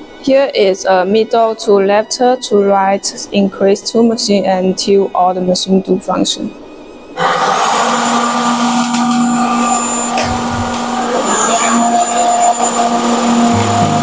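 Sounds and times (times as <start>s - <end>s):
cold spark machines hissing: 7.2s - 14.0s.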